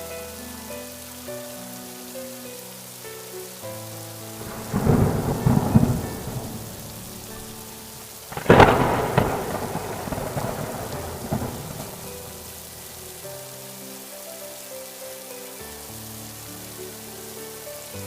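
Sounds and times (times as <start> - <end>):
steady rain: 0.0 - 18.0
thunder: 4.4 - 12.3.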